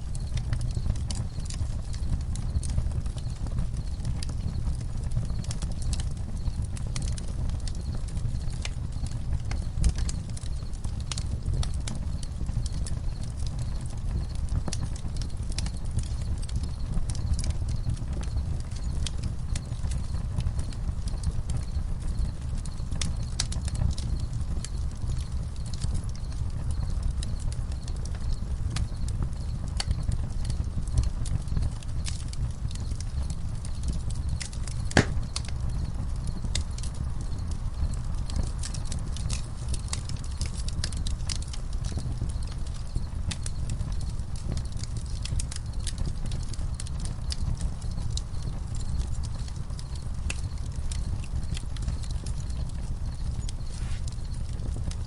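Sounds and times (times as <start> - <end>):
campfire crackling and popping: 0.0 - 55.0
crickets chirping: 46.8 - 55.0.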